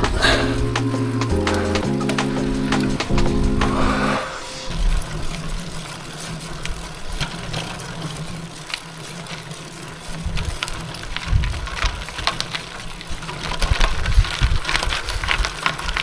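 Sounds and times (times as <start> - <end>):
wind rumble on microphone: 10.2 - 12.6, 13.2 - 16.0.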